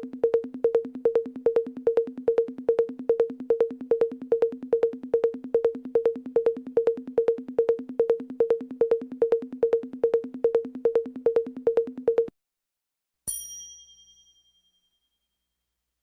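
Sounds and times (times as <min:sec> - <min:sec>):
electronic drum loop: 0:00.0 - 0:12.3.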